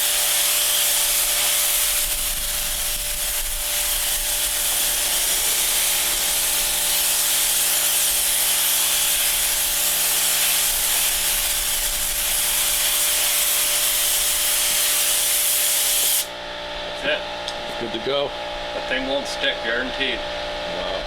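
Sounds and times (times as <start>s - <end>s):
sprayer hissing: 0.0s - 16.3s.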